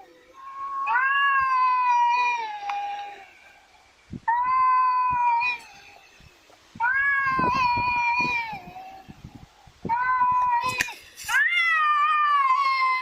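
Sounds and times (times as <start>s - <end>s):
cat meowing: 0.4s - 3.3s, 6.8s - 9.2s.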